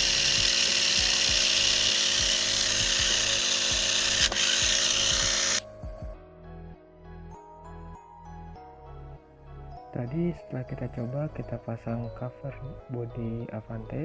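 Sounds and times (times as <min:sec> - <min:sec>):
toy car motor whirring: 0:00.0 - 0:05.6.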